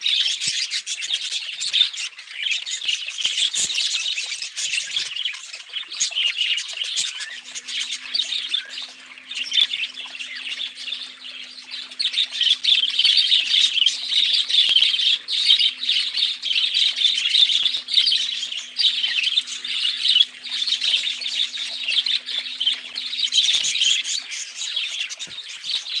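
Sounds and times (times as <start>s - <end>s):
budgerigars chirping and chattering: 0.0s - 26.0s.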